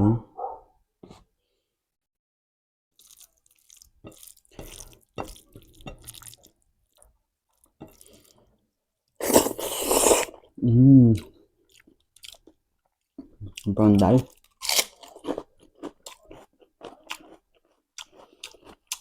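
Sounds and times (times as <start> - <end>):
loud slurp: 9.2 - 10.4
person humming mm: 10.0 - 11.3.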